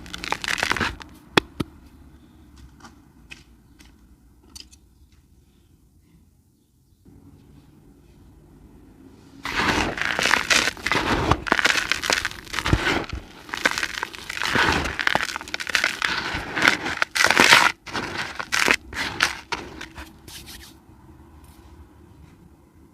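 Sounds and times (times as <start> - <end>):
cement crumbling: 0.0 - 1.1, 9.4 - 20.1.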